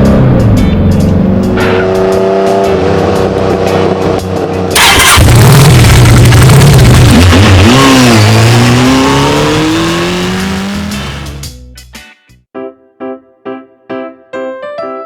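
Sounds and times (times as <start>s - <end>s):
background music with steady beat: 0.0s - 4.8s, 10.0s - 14.0s
car engine revving: 0.0s - 11.4s
loud rush of noise: 4.8s - 11.4s.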